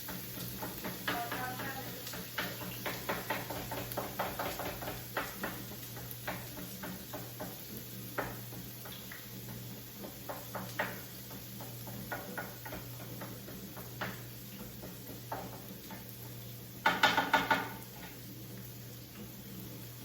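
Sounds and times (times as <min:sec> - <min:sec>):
clicks and taps at frying pan: 0:00.0 - 0:18.3.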